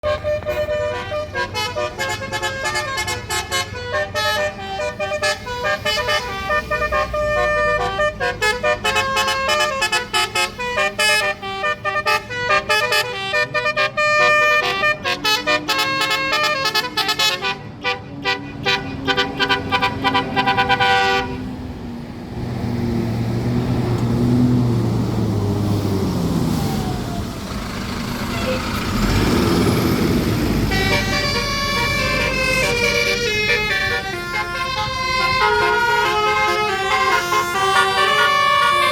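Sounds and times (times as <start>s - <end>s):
multi-tone air horn melody: 0.0s - 21.5s, 30.3s - 38.9s
vehicle engine running: 21.6s - 38.9s.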